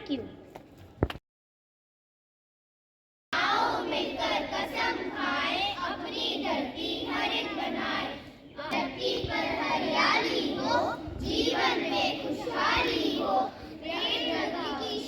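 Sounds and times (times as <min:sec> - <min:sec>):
children singing together: 0:03.4 - 0:15.0.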